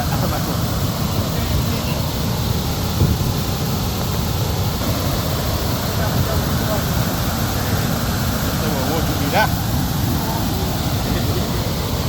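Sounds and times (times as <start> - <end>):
flowing water rushing: 0.0 - 12.0
wind rumble on microphone: 1.0 - 3.6.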